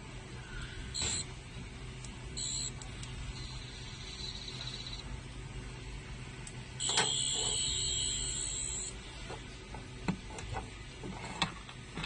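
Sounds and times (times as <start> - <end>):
high electronic buzzing tone: 1.0 - 1.3, 2.4 - 5.2, 6.8 - 9.0.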